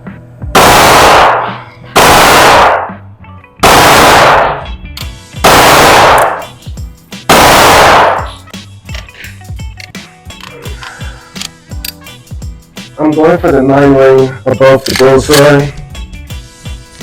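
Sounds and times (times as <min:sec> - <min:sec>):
pistol shots with echo: 0:00.6 - 0:03.0, 0:03.6 - 0:04.7, 0:05.4 - 0:06.6, 0:07.3 - 0:08.4.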